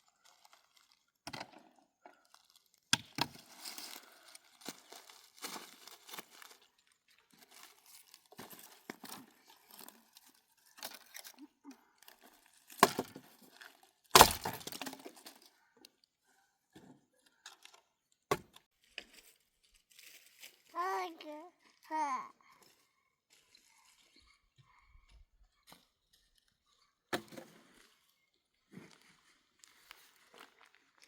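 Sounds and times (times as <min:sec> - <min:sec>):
rustling and crinkling handling: 0:00.0 - 0:01.2, 0:02.2 - 0:15.6, 0:18.6 - 0:21.9, 0:27.5 - 0:31.0.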